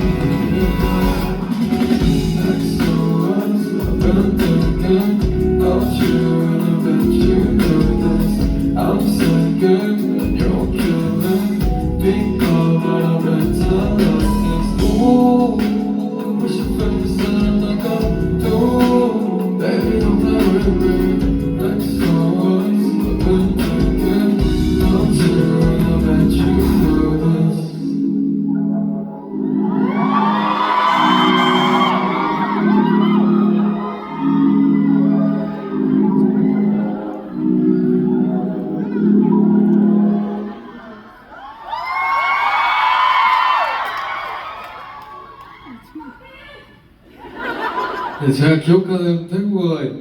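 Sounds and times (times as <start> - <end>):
strong bass line: 0.0 - 3.2, 10.2 - 12.8, 13.4 - 15.8, 23.0 - 27.4
live pop song with singing: 0.0 - 28.2, 29.8 - 44.6.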